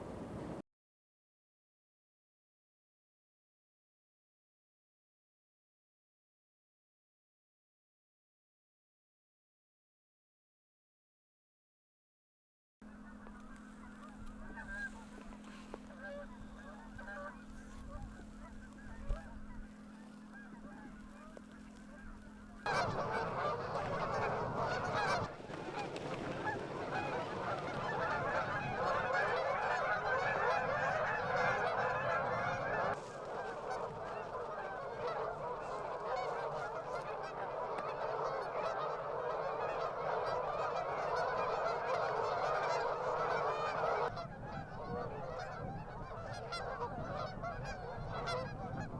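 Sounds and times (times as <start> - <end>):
steady low hum: 12.8 - 38.2
geese honking: 12.8 - 48.9.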